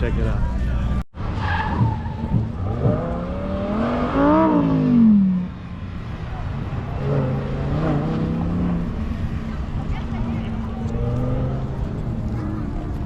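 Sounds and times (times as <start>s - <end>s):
sports car engine revving past: 2.1s - 5.7s, 6.8s - 13.0s.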